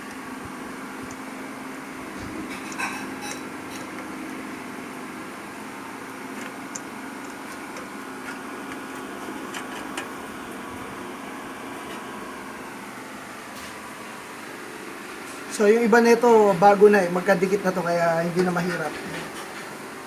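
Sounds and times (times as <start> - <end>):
fan humming: 0.0 - 20.0
connectors clicking: 6.1 - 8.8.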